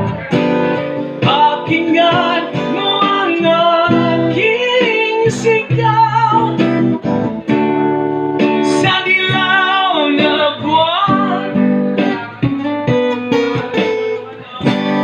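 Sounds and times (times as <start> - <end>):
strummed acoustic guitar: 0.0 - 15.0
person singing wordless vocal: 1.2 - 6.8, 8.6 - 12.4.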